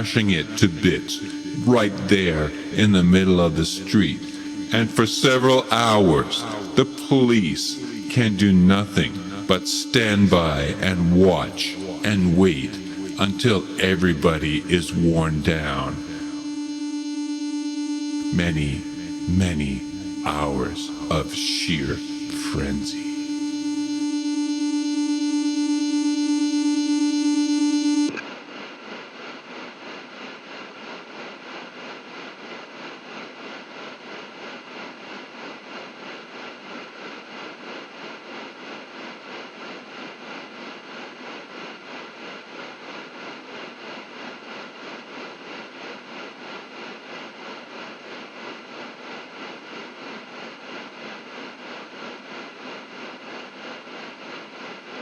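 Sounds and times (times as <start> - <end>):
electric guitar feedback: 0.0 - 28.2
noisy pulsing drone: 0.0 - 28.3.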